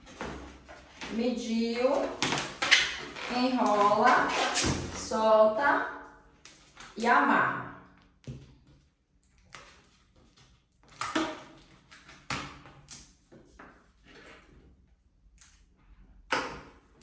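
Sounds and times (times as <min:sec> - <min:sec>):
balloon rubbing and squeaking: 0:02.4 - 0:05.1.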